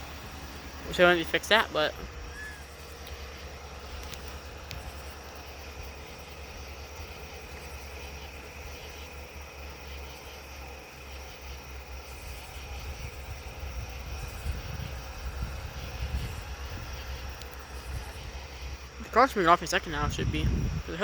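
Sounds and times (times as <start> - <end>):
engine idling rumble: 0.0 - 21.0
faint steady whine: 0.0 - 21.0.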